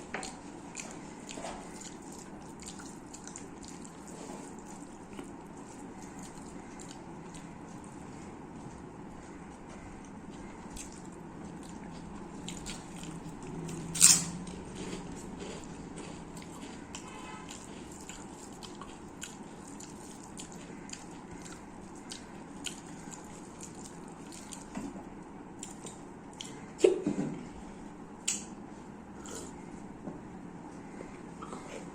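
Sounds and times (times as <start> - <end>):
person chewing with wet mouth clicks: 0.2 - 7.7, 8.6 - 24.8, 25.6 - 26.6.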